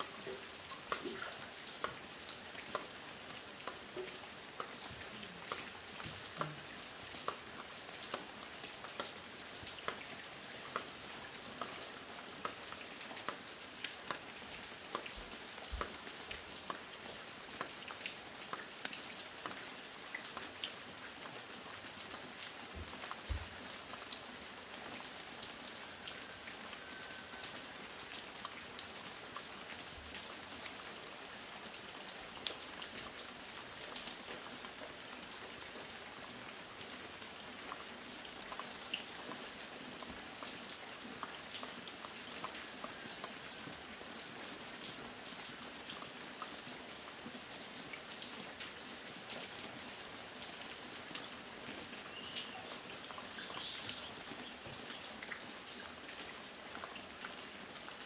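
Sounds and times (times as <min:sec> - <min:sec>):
fine rain falling: 0:00.0 - 0:58.0
water dripping off a roof: 0:00.0 - 0:58.0.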